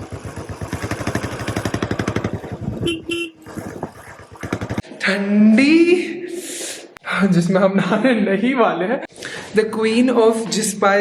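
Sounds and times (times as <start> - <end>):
motorcycle engine running: 0.0 - 4.8
motorcycle horn toot: 2.7 - 3.6.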